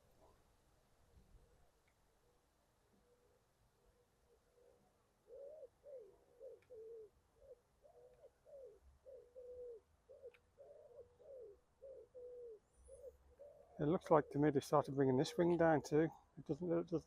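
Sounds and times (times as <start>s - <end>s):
pigeon cooing faintly: 4.4s - 14.4s.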